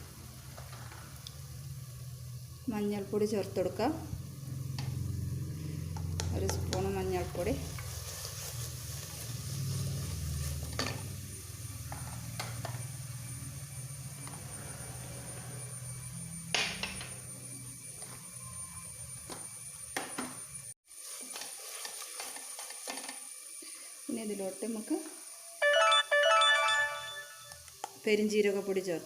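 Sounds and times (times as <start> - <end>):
light sizzle: 0.0 - 29.0.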